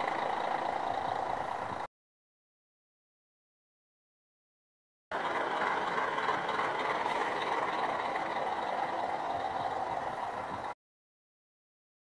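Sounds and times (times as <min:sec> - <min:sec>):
car engine running: 0:00.0 - 0:01.9, 0:05.1 - 0:10.7.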